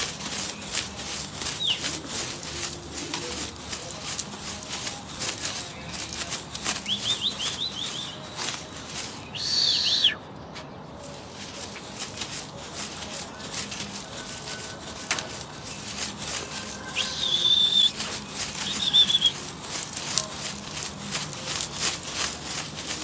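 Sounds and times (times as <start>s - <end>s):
pigeon wings flapping: 0.0s - 10.2s, 11.0s - 23.0s
high bird chirps: 6.8s - 10.2s.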